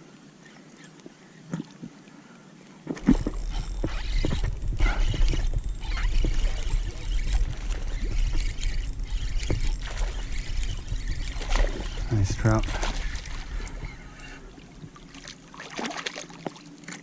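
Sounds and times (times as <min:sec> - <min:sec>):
shallow water splashing: 0:02.8 - 0:17.0
low wind rumble on microphone: 0:03.0 - 0:15.2.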